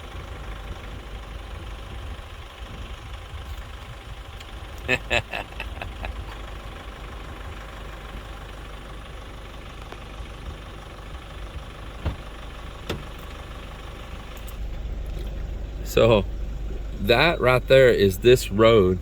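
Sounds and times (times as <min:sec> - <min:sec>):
pickup engine rumbling: 0:00.0 - 0:19.0
short knocks: 0:12.0 - 0:13.2.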